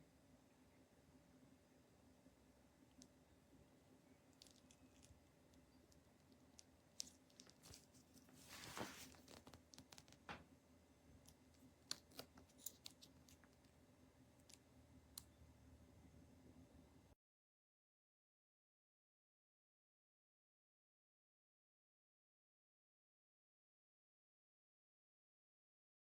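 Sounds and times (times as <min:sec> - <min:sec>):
brief rustle: 0:07.0 - 0:10.2.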